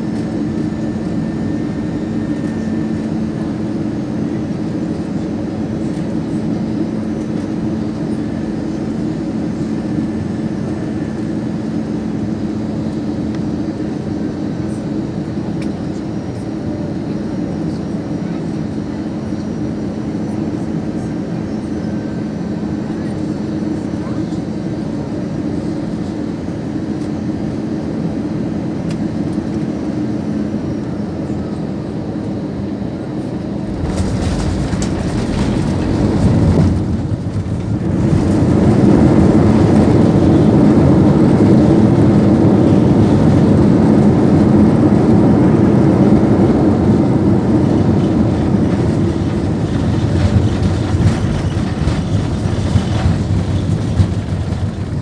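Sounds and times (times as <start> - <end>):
plane engine and airflow noise: 0.0 - 55.0
landing gear rumbling on runway: 33.3 - 55.0.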